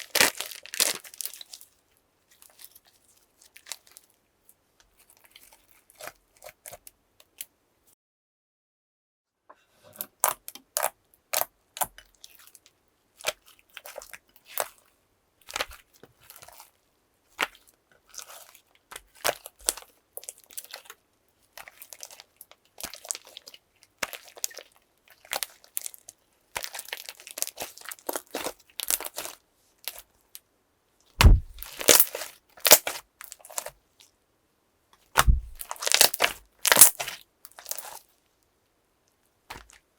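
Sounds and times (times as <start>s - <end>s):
slime squished by hand crackling: 0.0s - 1.6s, 31.2s - 33.0s, 35.2s - 38.0s.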